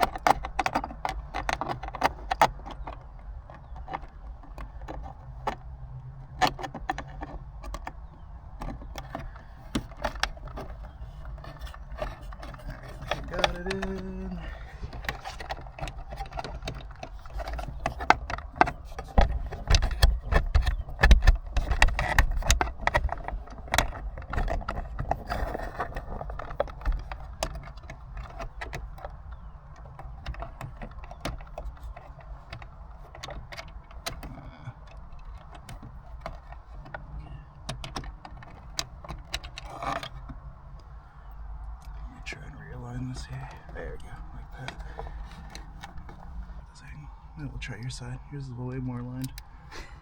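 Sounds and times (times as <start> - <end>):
plastic clicks and rattles: 0.0 - 47.3, 49.0 - 50.0.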